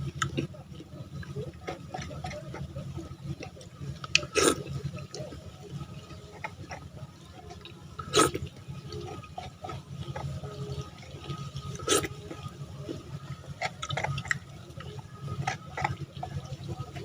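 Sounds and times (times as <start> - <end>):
steady low hum: 0.0 - 17.0
wet mouth sounds eating: 4.0 - 4.7, 7.6 - 8.4, 11.7 - 12.2, 13.6 - 14.5.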